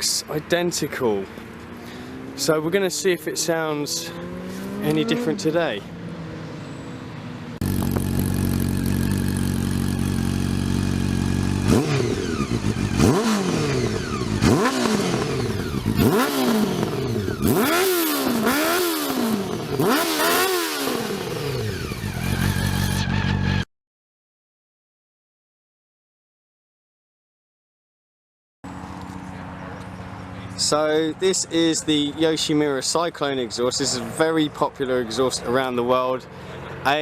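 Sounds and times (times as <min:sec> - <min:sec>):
motorcycle engine revving: 0:01.3 - 0:23.7.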